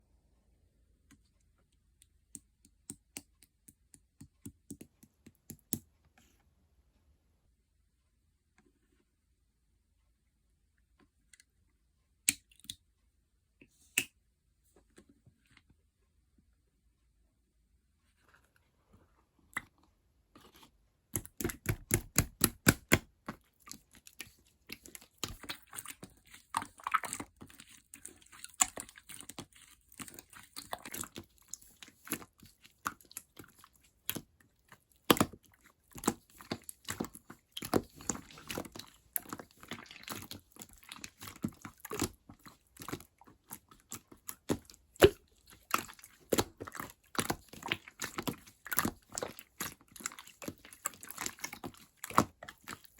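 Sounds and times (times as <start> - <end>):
slime squished by hand: 20.5 - 52.9.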